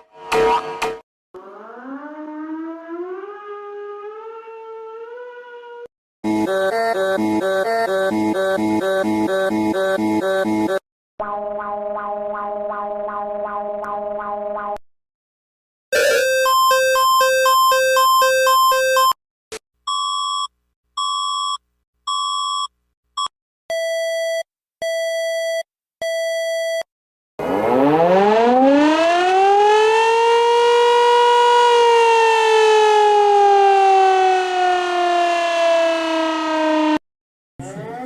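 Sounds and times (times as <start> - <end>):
civil defense siren winding: 1.4 - 9.0, 27.4 - 37.0.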